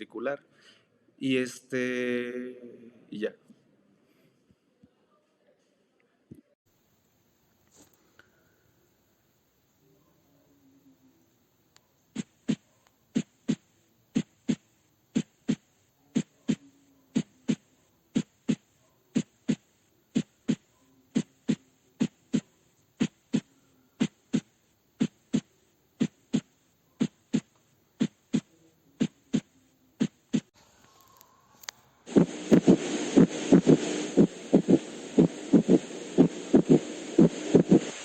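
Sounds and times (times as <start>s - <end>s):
heartbeat through stethoscope: 12.2s - 14.6s, 15.2s - 30.5s, 32.1s - 38.0s.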